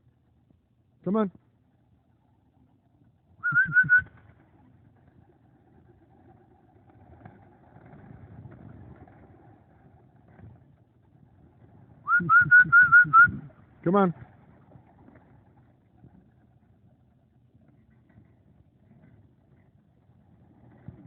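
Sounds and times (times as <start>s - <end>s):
person whistling short rapid notes: 3.4s - 4.1s, 12.1s - 13.4s.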